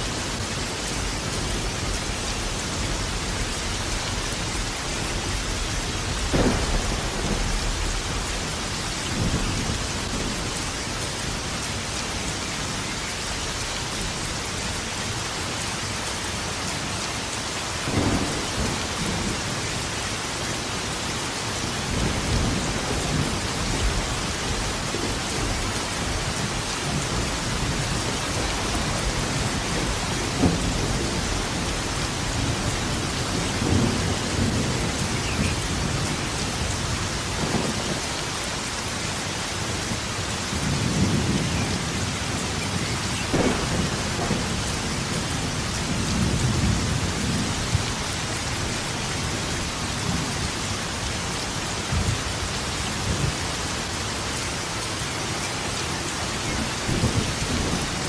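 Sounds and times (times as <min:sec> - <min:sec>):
heavy rain hissing: 0:00.0 - 0:58.0
thunder rumbling: 0:00.1 - 0:12.4, 0:17.8 - 0:20.1, 0:21.8 - 0:38.2, 0:39.9 - 0:52.3.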